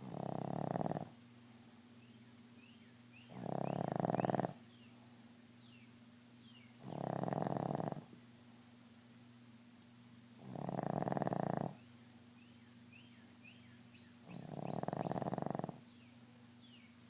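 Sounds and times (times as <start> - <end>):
dog snoring: 0.0 - 1.2, 3.2 - 4.6, 6.7 - 8.1, 10.3 - 11.8, 14.2 - 15.9
faint steady hum: 0.0 - 17.0.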